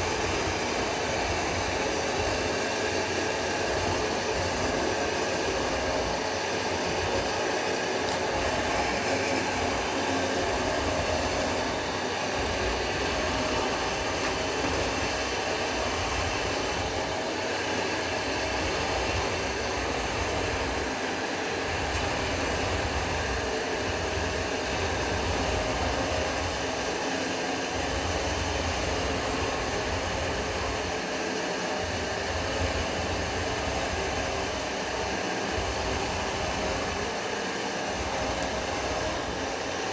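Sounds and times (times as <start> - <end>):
mixing machine running: 0.0 - 39.9.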